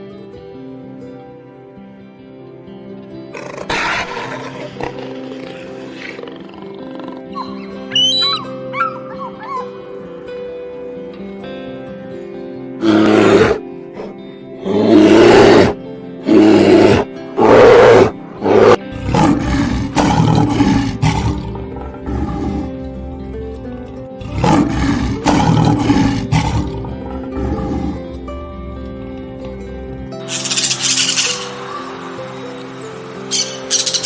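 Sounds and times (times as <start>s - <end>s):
background music: 0.0s - 34.0s
big cat roaring: 3.4s - 7.4s, 12.8s - 13.6s, 14.6s - 23.0s, 23.8s - 29.2s.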